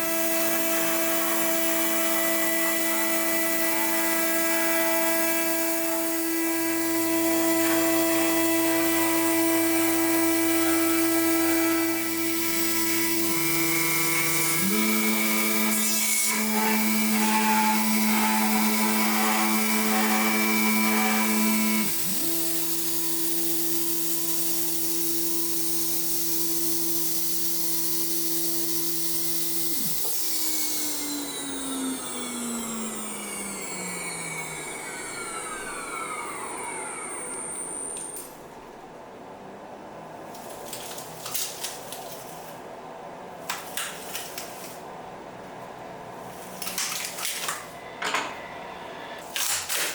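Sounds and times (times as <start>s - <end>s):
milling machine spindle whine: 0.0s - 39.0s
spindle spinning down: 29.8s - 38.6s.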